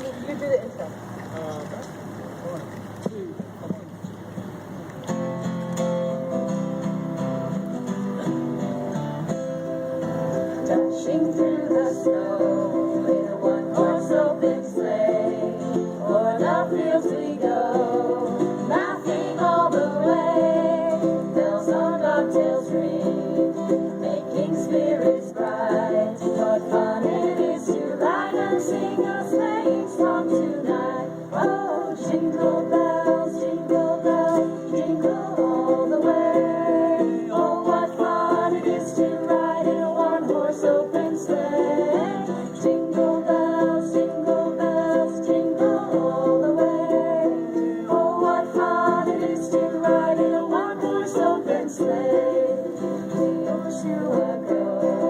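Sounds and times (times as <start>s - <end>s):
plucked string instruments playing: 4.0s - 55.0s.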